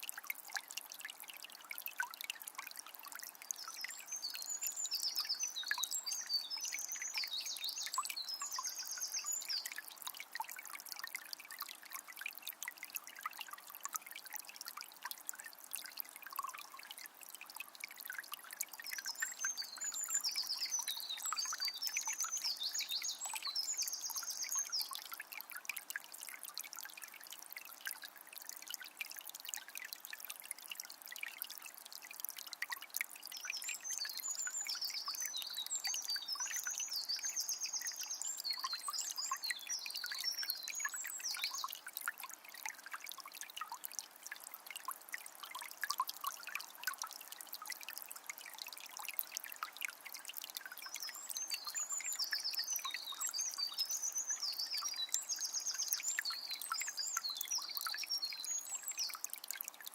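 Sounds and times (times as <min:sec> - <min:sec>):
spring water trickling: 0:00.0 - 0:59.9
songbird singing: 0:03.5 - 0:09.9, 0:18.9 - 0:25.1, 0:33.4 - 0:41.8, 0:50.8 - 0:59.3.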